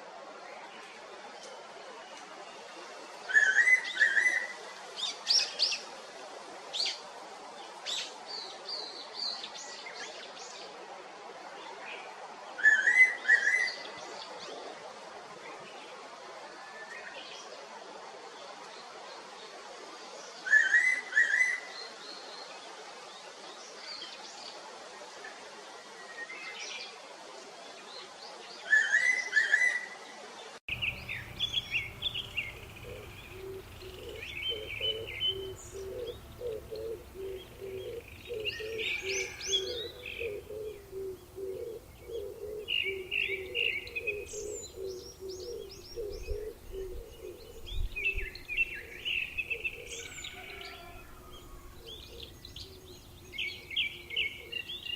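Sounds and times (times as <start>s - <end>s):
birds chirping: 30.7s - 54.9s.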